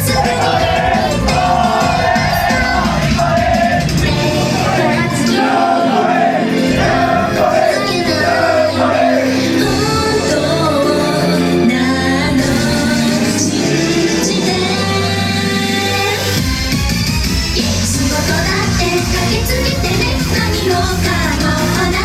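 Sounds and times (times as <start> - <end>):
female voices singing: 0.0 - 16.2
loud backing track: 0.0 - 22.0.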